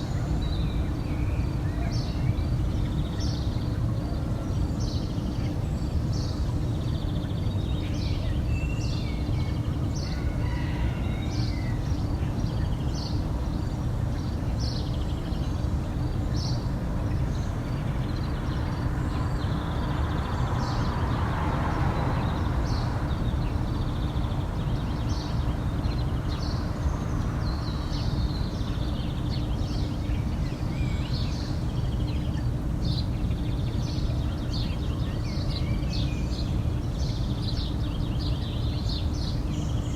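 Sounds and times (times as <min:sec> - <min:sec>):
low background rumble: 0:00.0 - 0:39.9
small birds chirping: 0:00.0 - 0:39.9
distant rooster crowing: 0:09.6 - 0:12.2.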